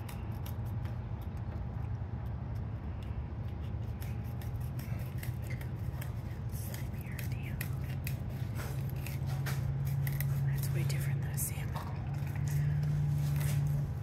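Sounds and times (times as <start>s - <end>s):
low hum: 0.0s - 14.0s
knife slicing and scraping fish: 3.6s - 10.5s.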